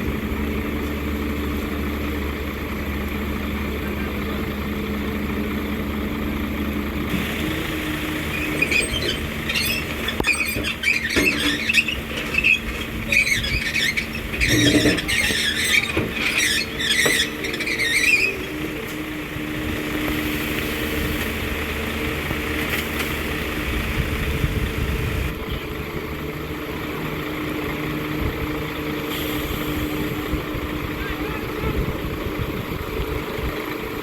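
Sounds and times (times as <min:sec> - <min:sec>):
diesel engine running: 0:00.0 - 0:34.0
crawler tracks squealing and clicking: 0:07.1 - 0:19.2.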